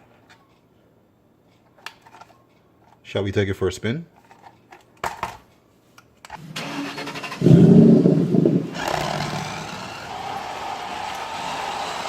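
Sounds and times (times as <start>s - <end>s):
toy car motor whirring: 8.7s - 12.0s.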